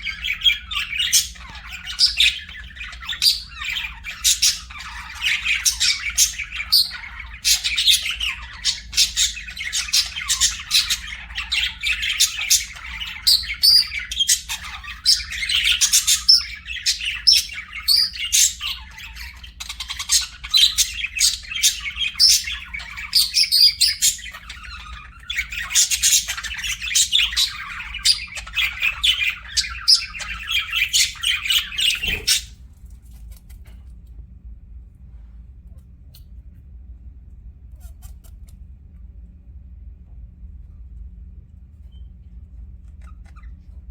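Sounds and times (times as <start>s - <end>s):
budgerigars chirping and squawking: 0.0s - 32.6s, 42.9s - 43.9s.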